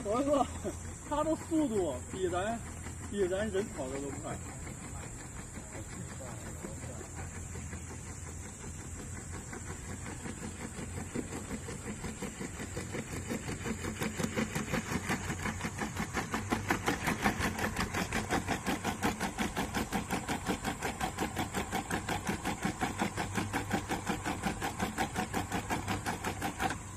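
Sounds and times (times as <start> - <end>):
steady high whine: 0.0 - 20.0.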